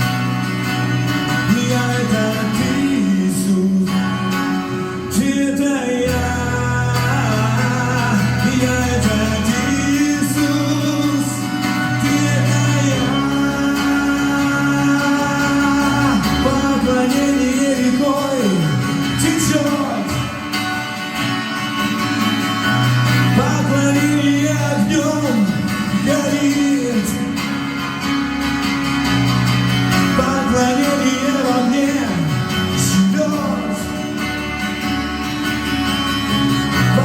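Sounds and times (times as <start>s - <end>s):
band playing sustained chords: 0.0s - 37.0s
person singing: 1.1s - 20.6s, 23.2s - 28.0s, 29.9s - 34.6s.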